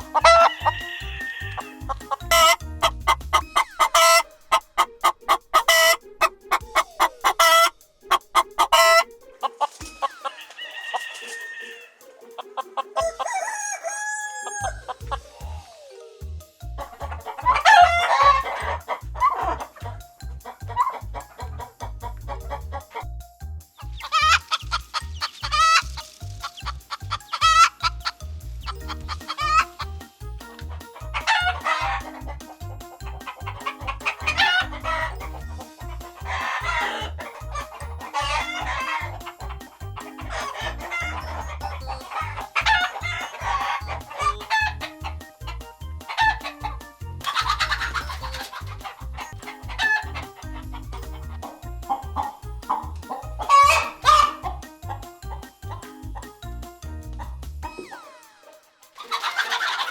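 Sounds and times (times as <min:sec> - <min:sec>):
rooster crowing: 0:00.0 - 0:01.7, 0:03.4 - 0:12.1, 0:12.9 - 0:15.0
chickens clucking and squawking: 0:00.0 - 0:23.1, 0:23.8 - 0:56.4, 0:57.2 - 0:59.9
background music with low beat: 0:00.0 - 0:59.9.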